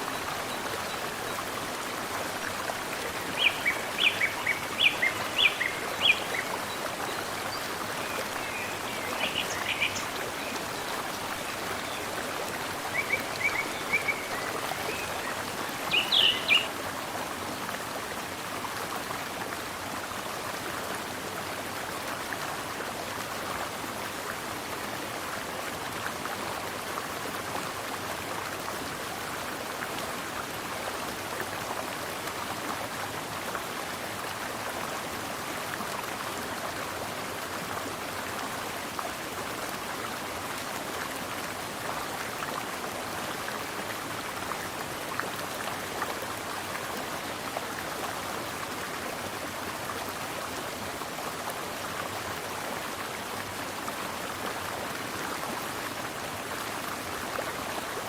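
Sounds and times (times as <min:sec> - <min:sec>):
stream flowing: 0:00.0 - 0:58.0.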